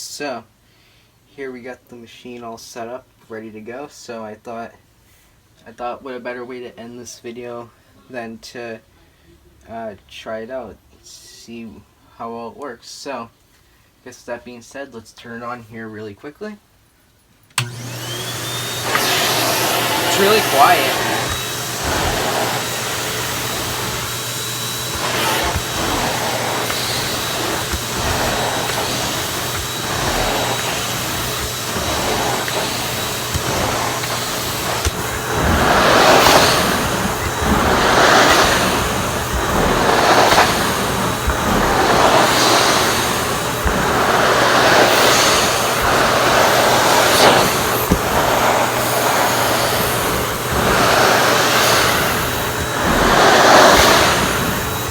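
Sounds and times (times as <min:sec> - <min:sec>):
vacuum cleaner running over carpet: 0:17.6 - 0:54.9.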